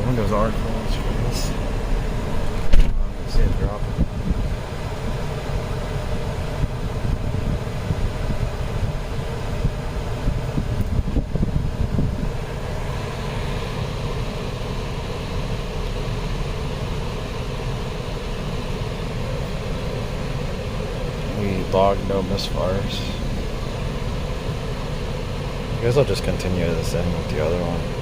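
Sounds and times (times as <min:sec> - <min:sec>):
blower air rushing: 0:00.0 - 0:28.0
low engine hum: 0:00.0 - 0:28.0.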